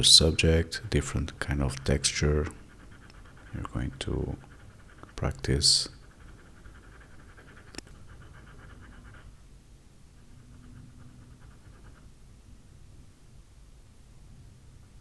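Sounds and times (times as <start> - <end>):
pencil scratching on paper: 0.0 - 9.4, 10.2 - 12.2.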